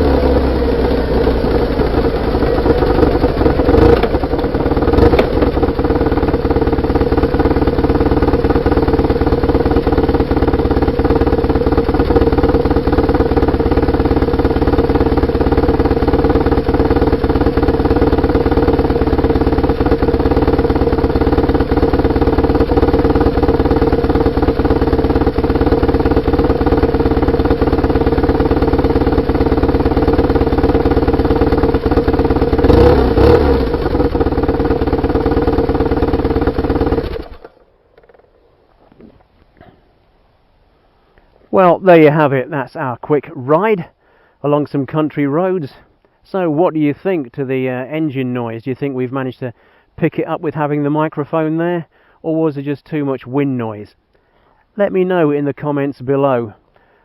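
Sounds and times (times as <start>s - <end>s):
motorcycle engine cruising: 0.0s - 39.8s.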